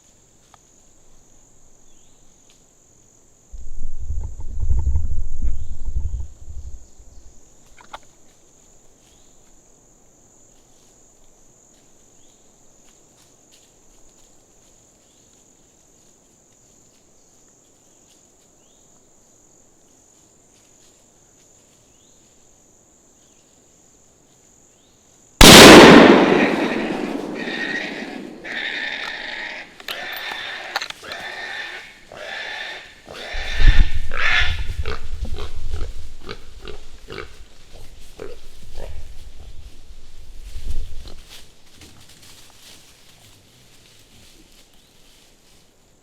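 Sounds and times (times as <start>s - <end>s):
loud gunshot ringing: 25.4s - 28.5s
high insect drone: 26.4s - 46.0s.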